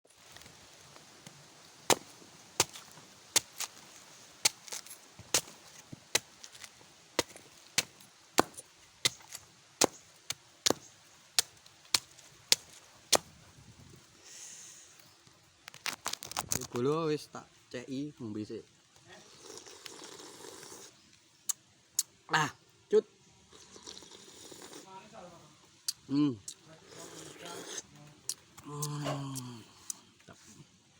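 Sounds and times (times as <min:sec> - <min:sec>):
soft hiss: 0:00.1 - 0:30.9
machete chopping coconut: 0:01.9 - 0:03.8, 0:04.4 - 0:13.3.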